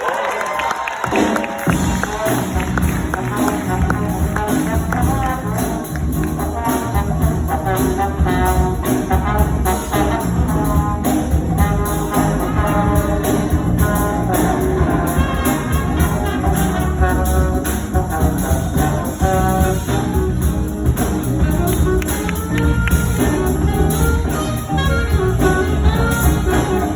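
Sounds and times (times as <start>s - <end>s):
drums: 0.0s - 26.9s
bass: 1.0s - 26.9s
trumpets and trombones: 1.1s - 26.9s.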